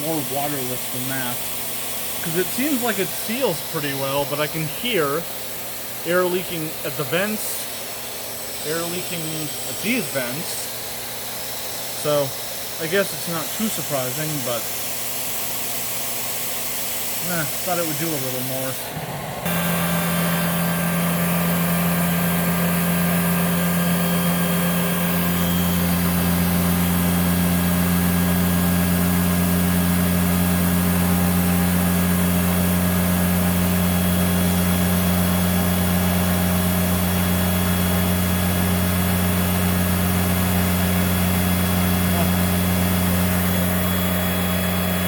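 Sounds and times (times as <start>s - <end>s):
vacuum cleaner running: 0.0s - 45.0s.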